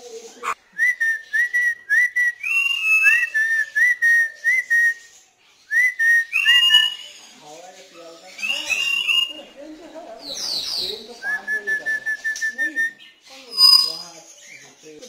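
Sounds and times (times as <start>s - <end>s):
parrot whistling: 5.8s - 7.1s, 8.4s - 9.4s, 11.2s - 14.0s.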